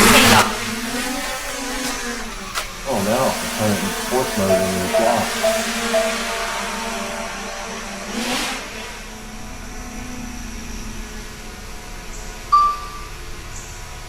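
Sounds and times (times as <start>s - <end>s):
drone propellers whirring: 0.0s - 12.4s
short sharp beep: 12.6s - 13.1s.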